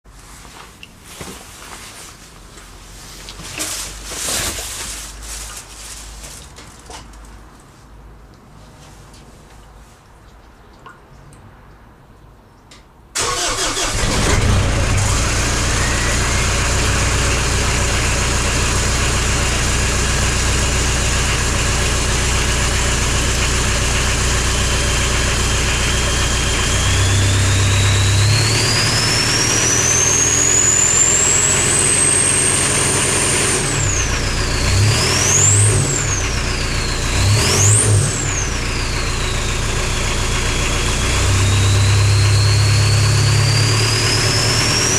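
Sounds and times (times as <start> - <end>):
diesel engine starting and running: 13.2 - 44.9
turbo whistle: 15.6 - 17.0.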